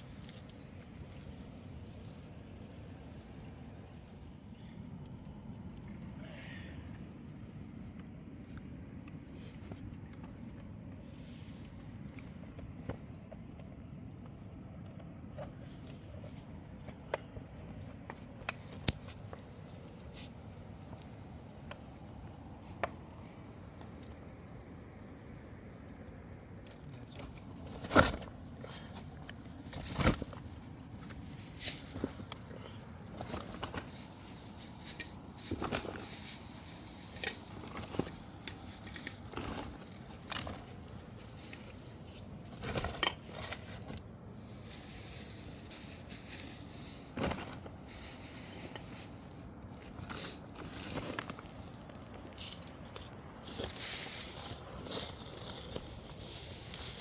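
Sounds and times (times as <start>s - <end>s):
steady background noise: 0.0s - 57.0s.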